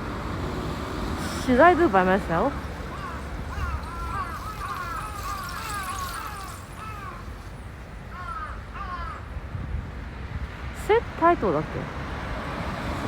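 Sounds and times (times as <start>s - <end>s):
high falling animal calls: 2.7s - 9.2s.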